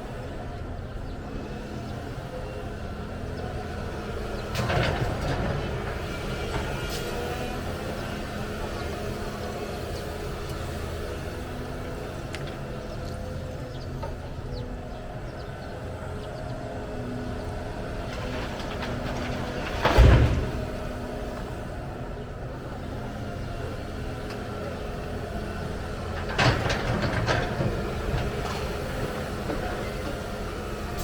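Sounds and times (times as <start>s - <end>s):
excavator diesel engine running: 0.0s - 31.0s
soil and rock crashing into truck bed: 18.0s - 21.0s.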